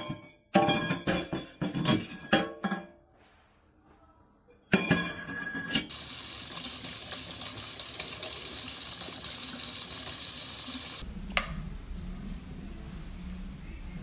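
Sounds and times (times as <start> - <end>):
running water: 5.9 - 11.0.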